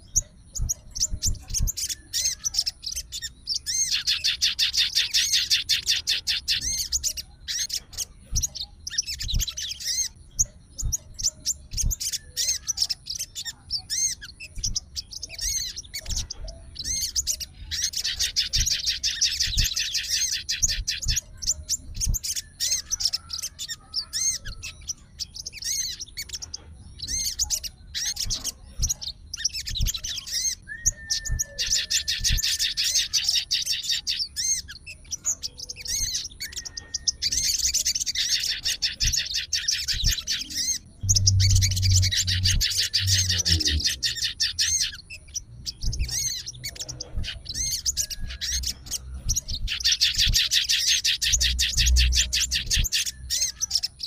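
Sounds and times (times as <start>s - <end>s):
single bird chirps: 35.4s - 48.6s
jay calling in rattling trills: 37.4s - 45.0s
low rumble: 41.0s - 44.3s.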